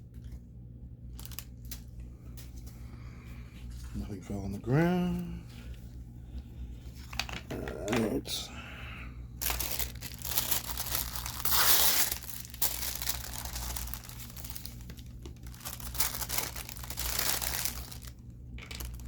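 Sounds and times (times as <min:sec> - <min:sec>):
plastic and paper crinkling: 0:01.1 - 0:02.8, 0:06.9 - 0:08.2, 0:09.4 - 0:19.0
packaging tearing: 0:01.2 - 0:01.8, 0:09.4 - 0:19.0.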